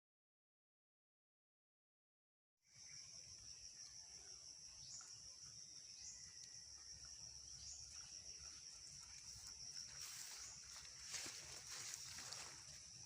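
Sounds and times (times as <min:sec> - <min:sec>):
insects droning: 0:02.6 - 0:13.0
soft rustle: 0:09.0 - 0:12.9.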